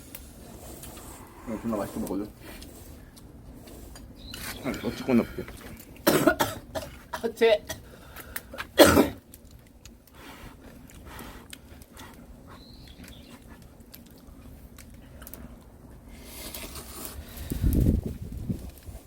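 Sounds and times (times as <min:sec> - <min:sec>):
chewing clicks and smacks: 0:09.3 - 0:15.7.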